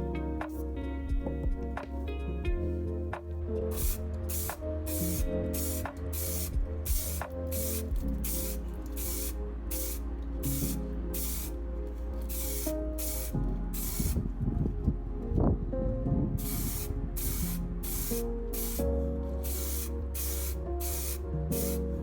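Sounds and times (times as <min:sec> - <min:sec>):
spray paint hissing bursts: 0:03.7 - 0:11.5, 0:12.2 - 0:14.2, 0:16.4 - 0:18.8, 0:19.4 - 0:22.0.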